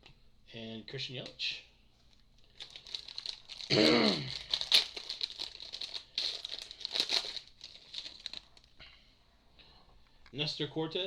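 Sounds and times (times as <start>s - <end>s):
foil wrapper crinkling and tearing: 2.1s - 8.8s.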